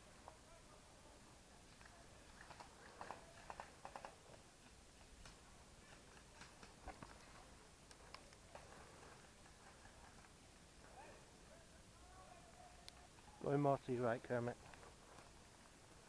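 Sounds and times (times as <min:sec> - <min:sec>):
faint clicks: 0:01.7 - 0:10.4, 0:12.7 - 0:13.3, 0:14.6 - 0:15.8.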